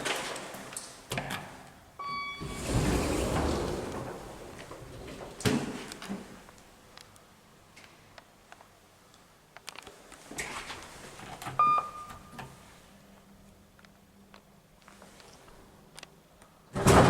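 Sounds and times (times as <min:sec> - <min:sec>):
lift electronic beep: 0:02.0 - 0:03.5, 0:11.6 - 0:12.3.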